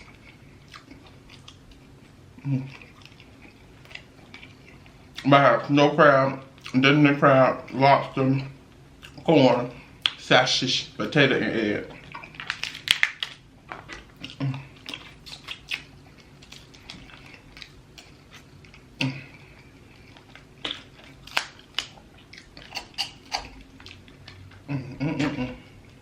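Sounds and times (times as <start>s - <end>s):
chewing and lip smacking: 0.0s - 5.4s, 6.5s - 6.9s, 8.7s - 9.3s, 11.8s - 26.0s.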